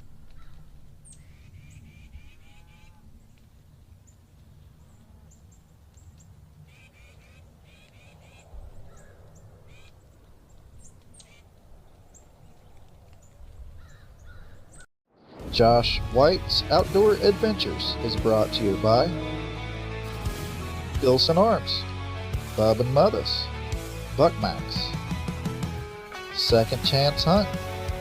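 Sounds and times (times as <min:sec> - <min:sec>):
birds chirping: 0:00.0 - 0:14.9, 0:15.6 - 0:25.8
harsh rapid bird calls: 0:00.3 - 0:03.0.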